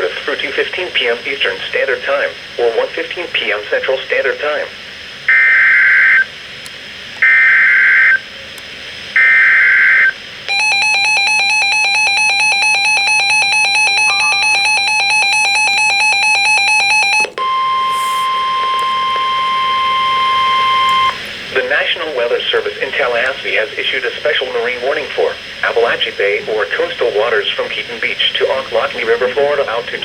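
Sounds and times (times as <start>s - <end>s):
steady warning alarm tone: 5.2s - 6.4s, 7.2s - 8.3s, 9.1s - 30.0s
pulsing electronic alarm beep: 9.2s - 21.2s
screechy digital header tones: 9.4s - 21.3s.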